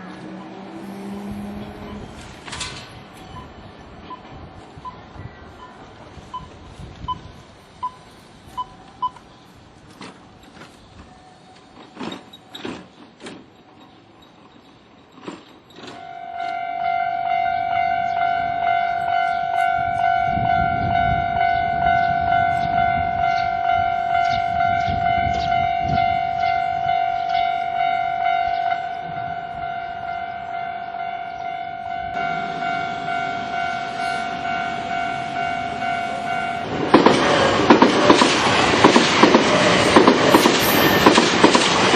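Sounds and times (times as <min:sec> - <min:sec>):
level crossing warning bell: 0:00.0 - 0:07.2, 0:13.5 - 0:37.0
approaching train: 0:00.0 - 0:41.9.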